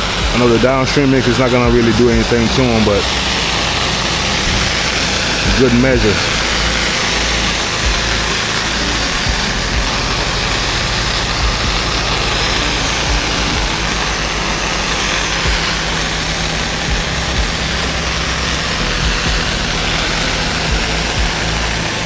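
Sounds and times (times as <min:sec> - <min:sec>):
pressure washer engine running: 0:00.0 - 0:22.0
water hissing from spray wand: 0:00.0 - 0:22.0.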